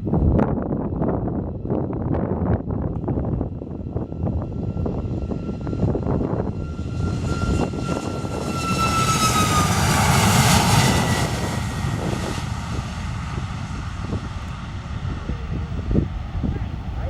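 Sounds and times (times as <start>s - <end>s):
jet engines roaring past: 3.0s - 17.0s.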